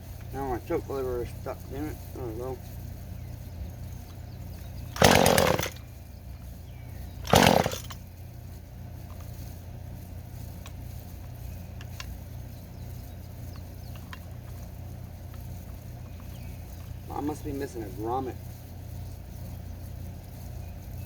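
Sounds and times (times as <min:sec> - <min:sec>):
steady low hum: 0:00.0 - 0:21.0
chainsaw engine firing: 0:04.9 - 0:05.9, 0:07.2 - 0:08.0.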